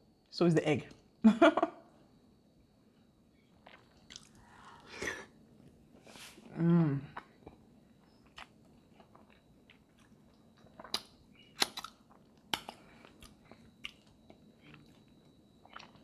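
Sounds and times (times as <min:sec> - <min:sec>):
chewing and wet mouth sounds: 0:03.5 - 0:04.9, 0:07.1 - 0:16.0
sharp snaps: 0:10.9 - 0:11.9.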